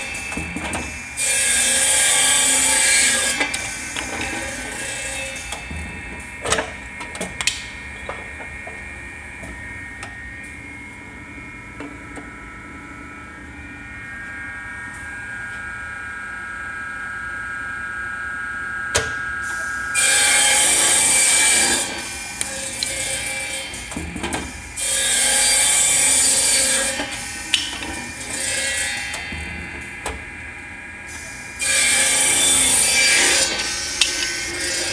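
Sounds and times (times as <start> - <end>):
saw blade cutting wood: 0.0 - 5.8, 19.0 - 29.6, 31.1 - 34.9
machine humming: 0.0 - 34.9.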